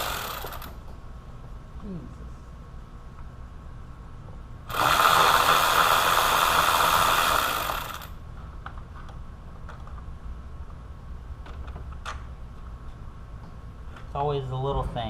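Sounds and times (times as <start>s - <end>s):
handheld power tool running: 0.0s - 0.8s, 4.7s - 8.2s.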